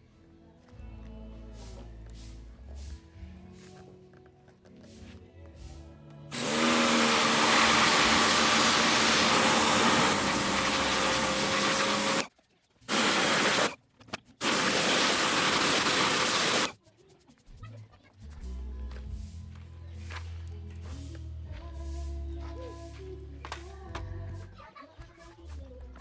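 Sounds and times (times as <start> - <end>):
loud rushing hiss: 6.3 - 12.2, 12.9 - 13.8, 14.4 - 16.7
cleaning machine motor hum: 6.3 - 12.3, 12.9 - 13.7, 14.4 - 16.7.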